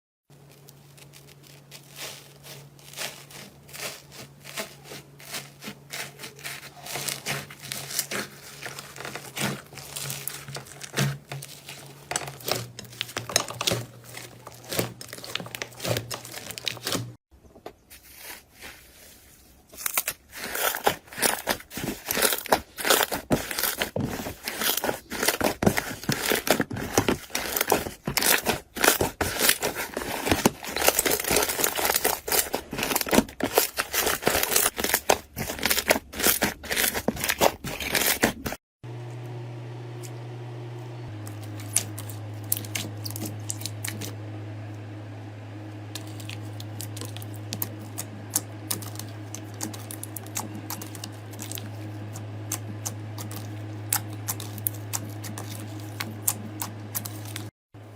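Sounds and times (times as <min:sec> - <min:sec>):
low electrical hum: 0:00.3 - 0:38.2, 0:38.9 - 0:57.9
slime crackling and popping: 0:46.0 - 0:51.7.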